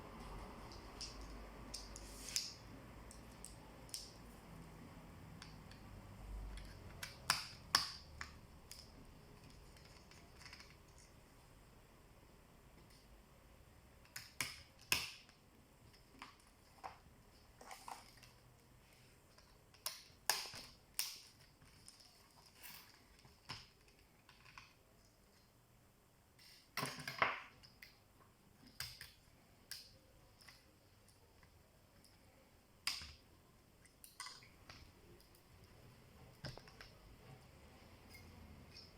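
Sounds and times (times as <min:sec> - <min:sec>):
laptop parts clicking and tapping: 0:05.3 - 0:11.1.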